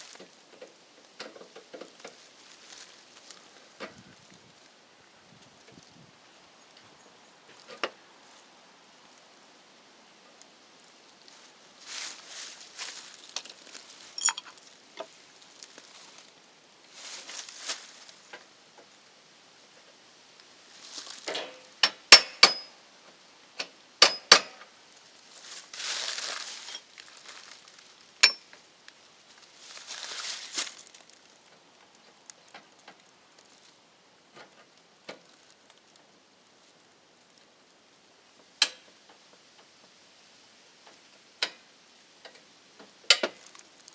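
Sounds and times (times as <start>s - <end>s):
rustling: 0.0s - 6.1s, 10.4s - 18.5s, 20.7s - 21.8s, 24.8s - 33.8s
small hard parts clinking: 13.3s - 14.7s, 28.2s - 28.5s.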